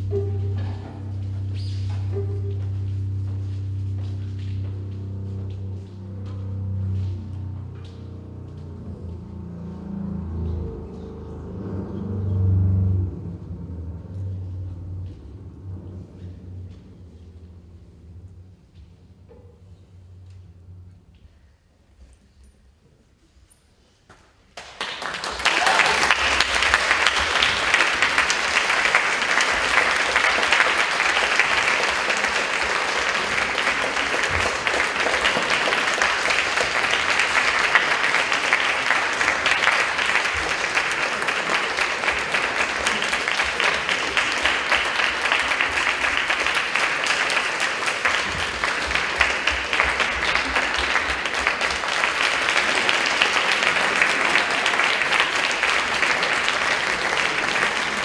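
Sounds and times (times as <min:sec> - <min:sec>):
audience applauding: 0:24.6 - 0:58.0.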